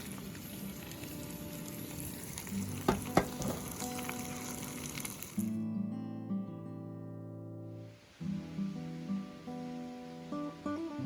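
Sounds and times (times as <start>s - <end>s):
bacon sizzling in a pan: 0.0s - 5.6s
acoustic guitar music: 0.0s - 11.0s
sharp knocks: 2.9s - 3.7s.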